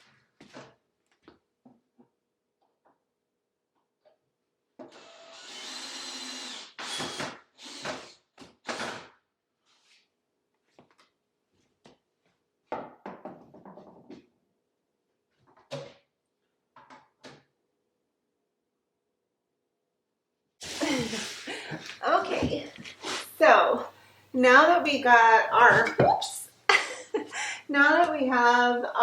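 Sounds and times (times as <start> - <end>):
power drill driving screws: 4.8 - 9.2.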